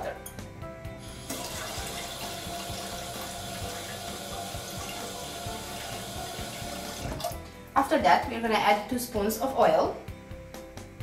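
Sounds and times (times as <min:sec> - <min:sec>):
tap water running into a pot: 0:01.0 - 0:07.5.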